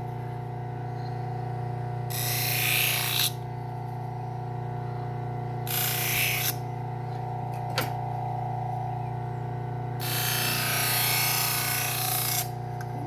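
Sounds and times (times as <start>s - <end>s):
belt sander humming: 9.6s - 13.0s.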